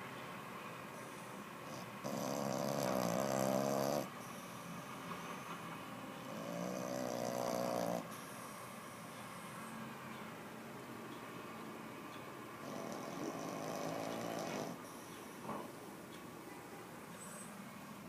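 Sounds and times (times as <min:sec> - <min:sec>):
puppy snoring: 0:01.0 - 0:04.6, 0:06.2 - 0:08.6, 0:12.6 - 0:15.2.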